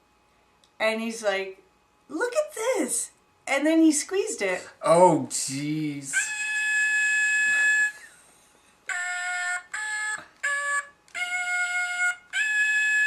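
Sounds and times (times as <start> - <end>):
plush toy singing: 6.1 - 7.5, 8.9 - 13.0.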